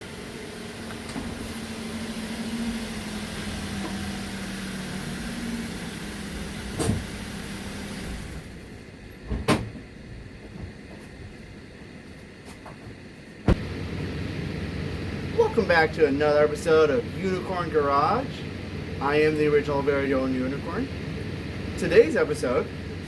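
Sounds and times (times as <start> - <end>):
motor vehicle running: 0.0 - 8.8, 13.5 - 23.0.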